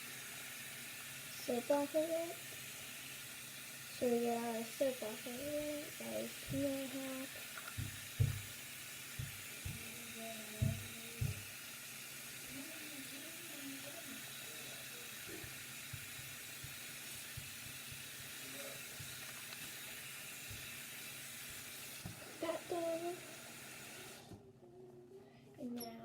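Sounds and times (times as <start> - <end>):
tap water running into sink: 0.0 - 24.4
knocks: 7.7 - 8.5.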